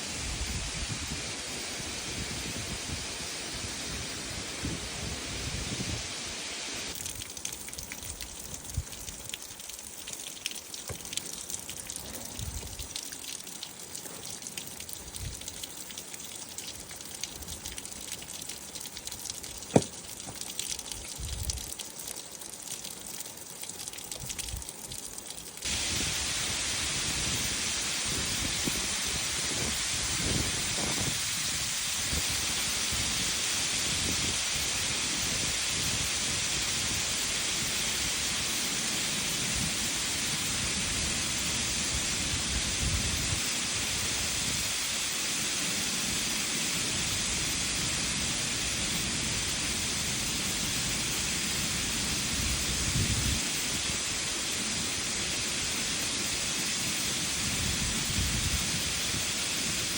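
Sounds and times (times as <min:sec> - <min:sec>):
rain pattering: 0:06.9 - 0:26.2.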